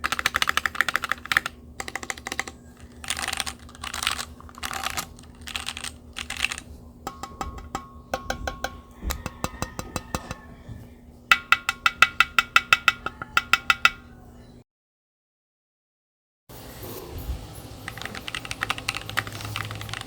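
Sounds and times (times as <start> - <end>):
mechanical keyboard typing: 0.0 - 6.7, 17.8 - 20.0.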